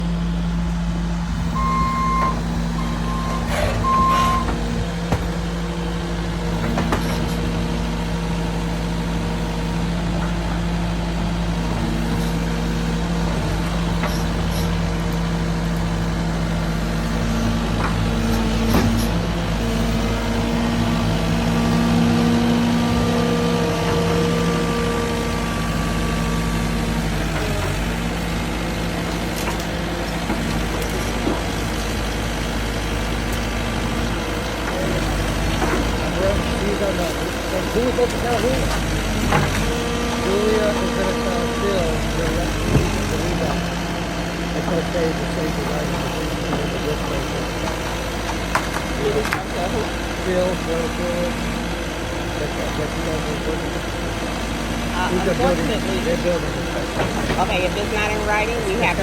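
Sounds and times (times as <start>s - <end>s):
diesel machinery engine running: 0.0s - 59.0s
reversing alarm beeping: 1.5s - 4.8s.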